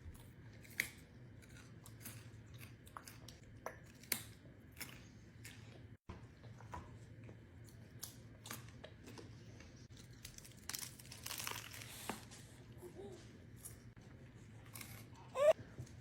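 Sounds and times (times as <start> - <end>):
snack packaging crinkling: 9.9 - 12.3.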